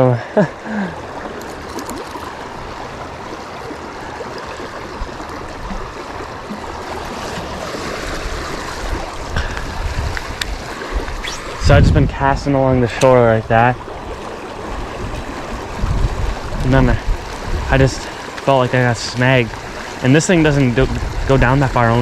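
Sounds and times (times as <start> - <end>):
fast-flowing river rushing: 1.0 - 11.7.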